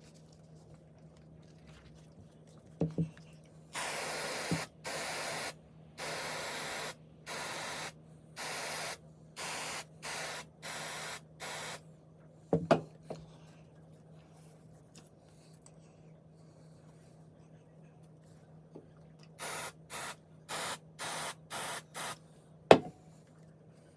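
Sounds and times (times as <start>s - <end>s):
aerosol spray hissing: 3.8s - 11.8s, 19.4s - 22.2s.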